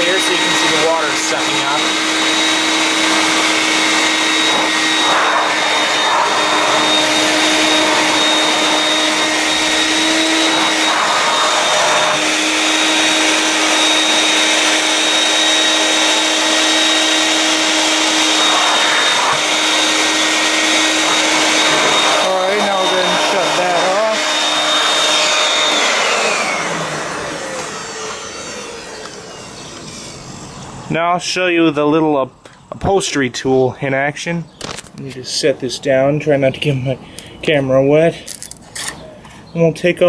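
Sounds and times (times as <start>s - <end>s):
vacuum sucking up water: 0.0s - 29.0s.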